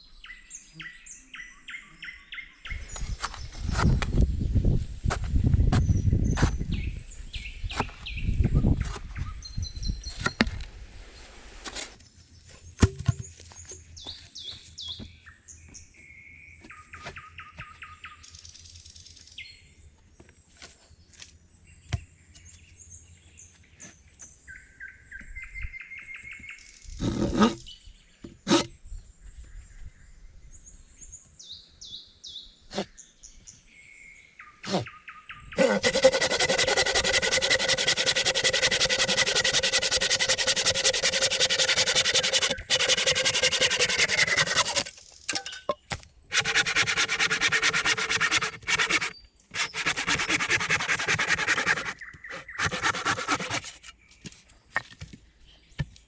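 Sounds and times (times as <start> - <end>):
songbirds trilling: 30.6 - 54.3
loud steady rasping noise: 35.6 - 45.0, 46.3 - 53.7.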